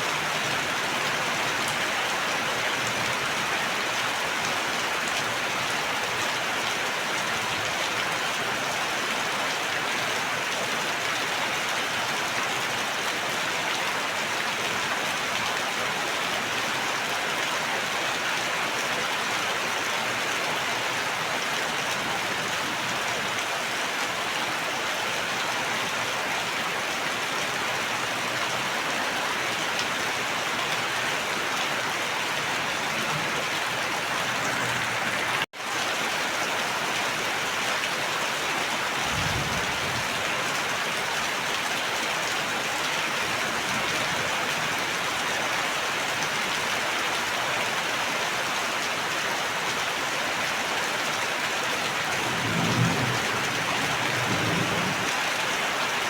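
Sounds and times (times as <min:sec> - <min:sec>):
steady rain hiss: 0:30.2 - 0:56.0.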